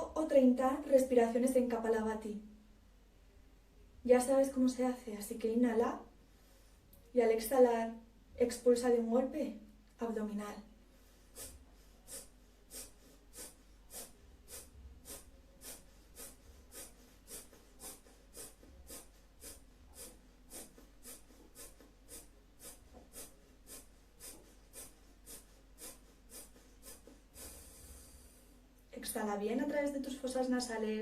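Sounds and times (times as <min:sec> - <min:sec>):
forceful nasal exhalations: 0:11.0 - 0:28.7.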